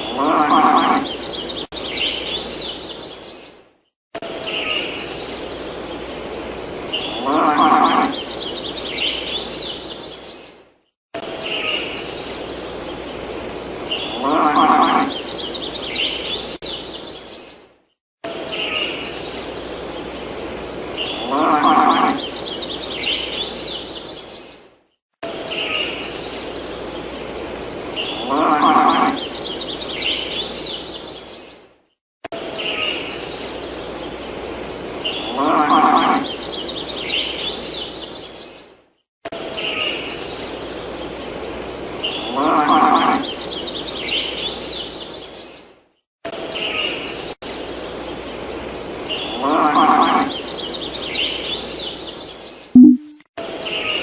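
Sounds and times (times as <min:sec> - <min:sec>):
farm animal call: 0:00.0 - 0:01.2, 0:07.2 - 0:08.2, 0:14.1 - 0:15.2, 0:21.2 - 0:22.2, 0:28.2 - 0:29.3, 0:35.3 - 0:36.4, 0:42.3 - 0:43.4, 0:49.4 - 0:50.4
bird chirps and trills: 0:52.6 - 0:53.2.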